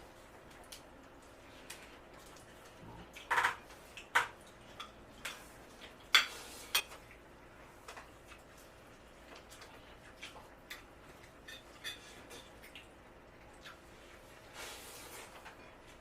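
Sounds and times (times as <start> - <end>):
cutlery clinking against plates: 6.1 - 7.0, 10.7 - 12.8.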